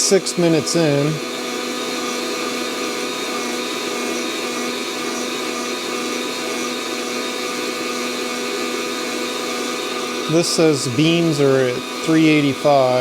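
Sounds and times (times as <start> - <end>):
fan blowing hot air: 0.0 - 13.0.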